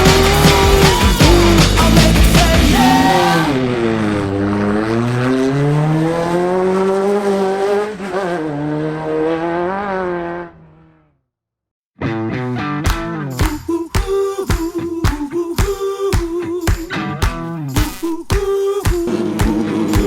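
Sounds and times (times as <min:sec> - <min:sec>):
music: 0:00.0 - 0:03.6, 0:12.0 - 0:20.0
race vehicle engine revving: 0:00.0 - 0:11.1, 0:19.1 - 0:20.0.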